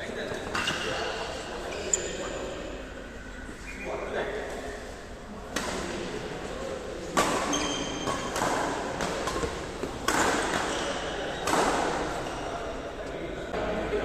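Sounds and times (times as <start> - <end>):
rackets hitting shuttlecock: 7.1 - 12.4.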